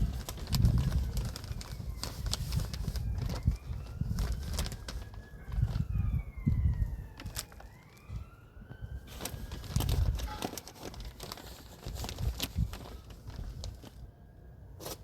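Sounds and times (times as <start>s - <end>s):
compost crackling and rustling: 0.0s - 15.0s
siren wailing: 0.7s - 10.4s.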